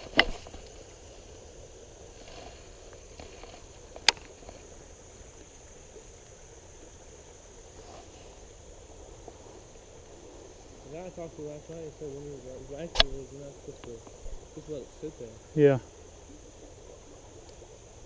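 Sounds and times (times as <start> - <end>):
high insect drone: 0.0 - 18.0
river water rushing: 0.0 - 18.0
sharp click: 12.9 - 13.2.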